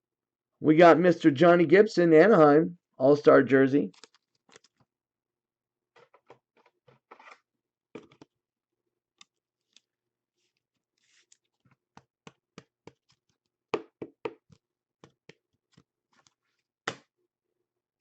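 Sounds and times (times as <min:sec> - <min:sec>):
soft rustle of cards: 0:09.2 - 0:13.5, 0:14.4 - 0:16.7
cards tapping and clicking: 0:11.8 - 0:17.0.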